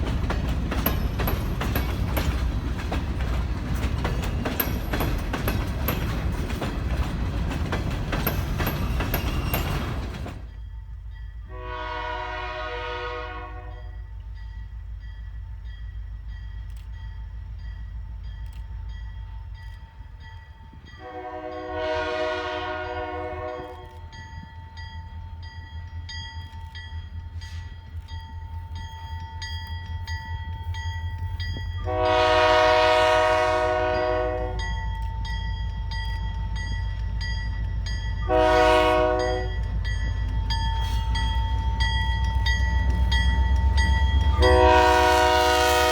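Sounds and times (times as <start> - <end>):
locomotive air horn blasts: 11.5 - 14.0, 21.0 - 23.8, 31.8 - 34.7, 38.2 - 39.6, 44.3 - 45.9.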